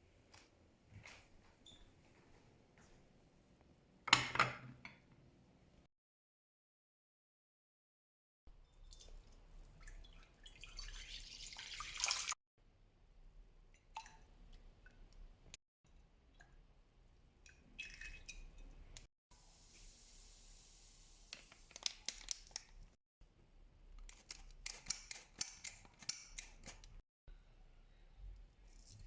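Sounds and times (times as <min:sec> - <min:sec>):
sharp clicks and snips: 0:24.0 - 0:27.0.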